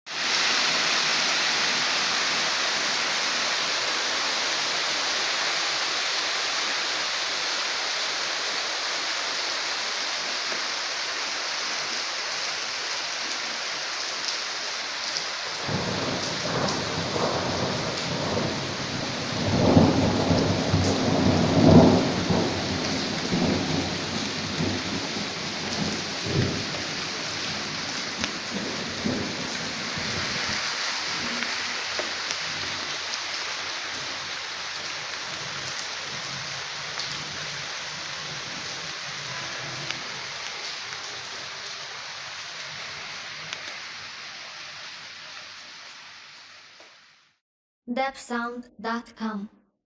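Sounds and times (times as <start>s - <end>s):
steady rain: 0.1s - 47.4s
rolling thunder: 15.6s - 31.4s.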